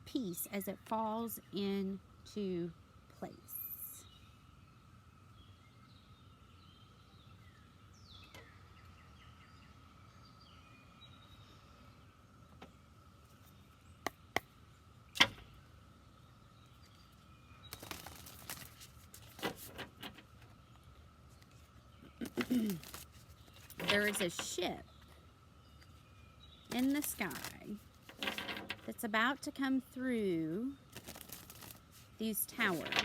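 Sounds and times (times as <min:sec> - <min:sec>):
rustling: 0:16.8 - 0:20.6, 0:21.3 - 0:24.6, 0:26.6 - 0:28.9, 0:30.9 - 0:33.0.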